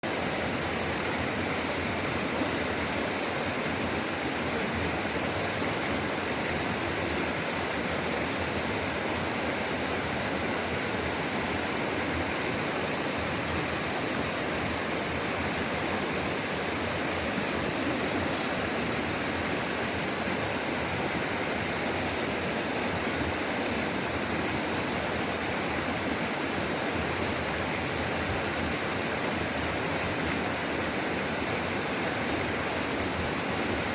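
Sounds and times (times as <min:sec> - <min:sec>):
waterfall rushing water: 0:00.0 - 0:33.9.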